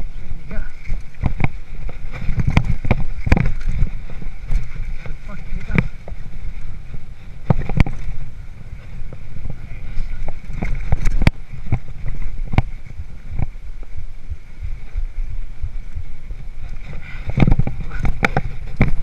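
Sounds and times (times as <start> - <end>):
bike rolling over dirt trail: 0.0 - 19.0
wind rumble on microphone: 0.0 - 19.0
bike knocks and rattles: 0.8 - 6.3, 6.9 - 8.3, 8.9 - 13.6, 16.0 - 19.0.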